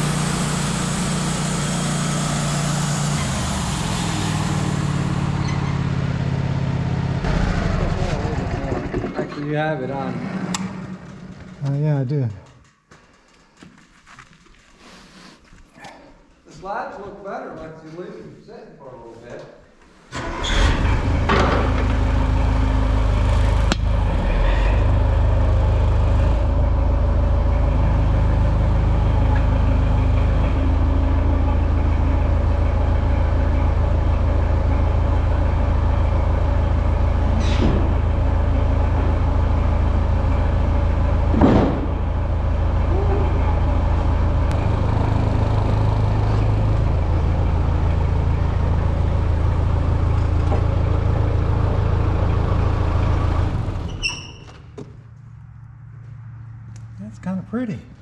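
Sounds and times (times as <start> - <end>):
sawmill engine running: 0.0 - 12.3, 20.2 - 54.1.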